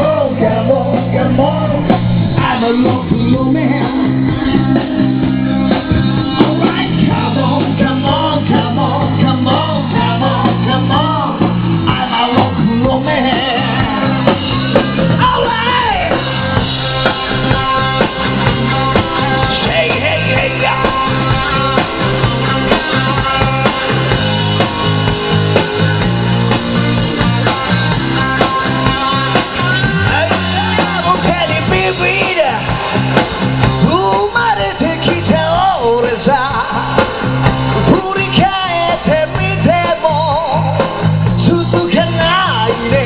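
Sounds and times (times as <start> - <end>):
person singing: 0.0 - 25.5, 27.4 - 32.8, 33.8 - 43.0
drum beat: 0.0 - 43.0
electric guitar: 0.0 - 43.0.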